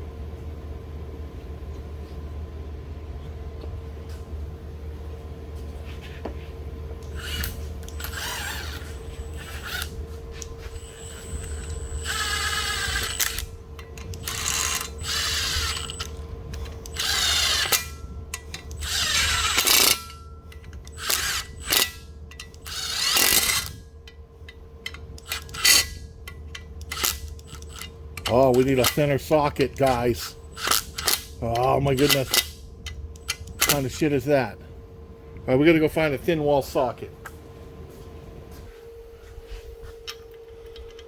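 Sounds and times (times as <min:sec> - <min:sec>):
faint steady hum: 0:00.0 - 0:41.0
power drill bursts: 0:07.1 - 0:10.0, 0:10.6 - 0:13.5, 0:14.1 - 0:16.2, 0:16.8 - 0:18.0, 0:18.7 - 0:20.1, 0:20.9 - 0:22.0, 0:22.6 - 0:23.8.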